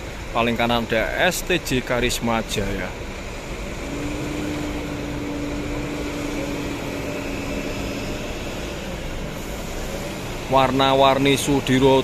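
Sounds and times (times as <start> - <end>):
buses idling: 0.0 - 12.0
steady hum: 2.9 - 12.0.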